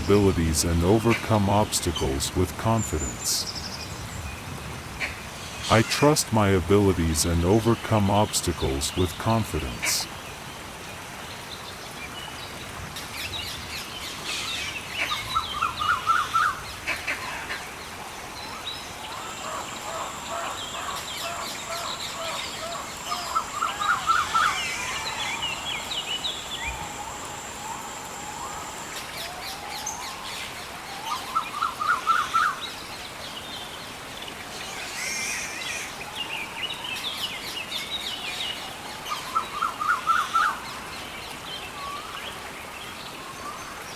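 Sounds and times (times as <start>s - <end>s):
birds calling and chirping: 18.3s - 30.4s.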